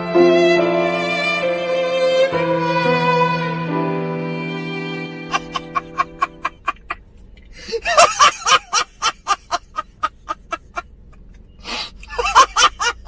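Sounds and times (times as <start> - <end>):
person laughing: 5.3 - 7.0, 7.6 - 10.9, 11.7 - 13.0.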